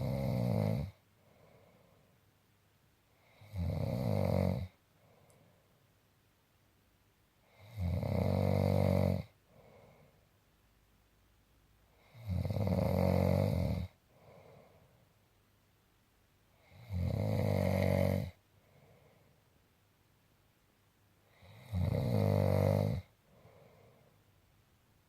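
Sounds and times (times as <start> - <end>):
loud snoring: 0.0 - 1.0, 3.2 - 4.8, 7.5 - 9.4, 12.0 - 14.0, 16.6 - 18.4, 21.3 - 23.1
faint breath: 1.1 - 2.2, 4.9 - 5.9, 9.4 - 10.4, 14.0 - 15.3, 18.4 - 19.6, 23.1 - 24.4.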